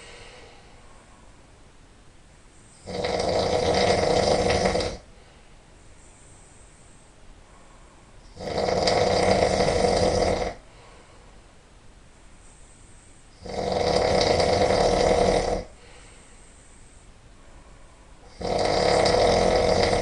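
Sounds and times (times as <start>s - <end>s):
quiet breathing: 0.0s - 20.0s
person snoring loudly: 2.8s - 5.1s, 8.3s - 10.6s, 13.4s - 15.8s, 18.3s - 20.0s.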